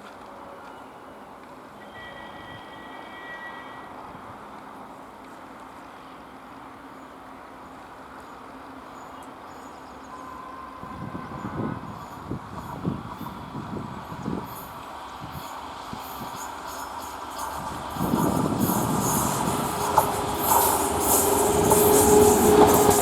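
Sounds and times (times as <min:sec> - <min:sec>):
train approaching on rails: 0:00.0 - 0:23.0
train wheels clattering over rail joints: 0:15.3 - 0:23.0.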